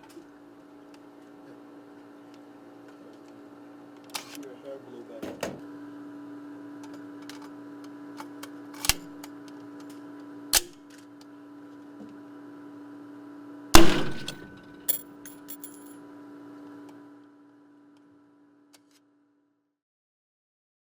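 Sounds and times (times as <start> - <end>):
steady machine hum: 13.7 - 15.9
loud metallic bang: 13.8 - 14.6
light clinks: 14.9 - 15.9.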